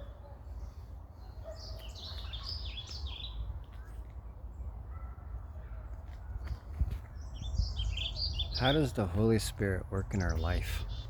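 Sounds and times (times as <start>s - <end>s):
bird chirping: 0.0s - 4.0s, 6.4s - 11.0s.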